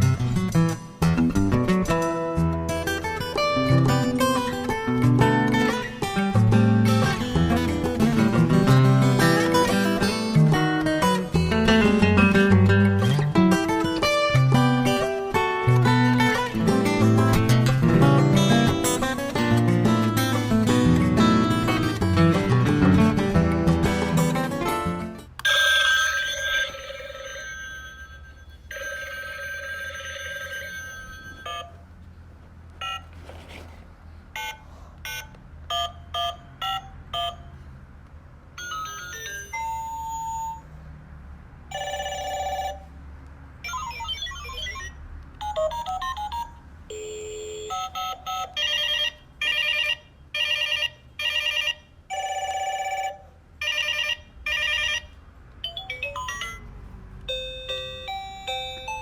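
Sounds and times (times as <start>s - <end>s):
electronic phone ring: 25.4s - 31.9s, 32.8s - 33.2s, 34.4s - 37.6s, 38.6s - 40.7s, 41.7s - 43.0s, 43.6s - 59.0s
electronic tones: 43.6s - 48.9s
button beeps: 43.7s - 46.6s.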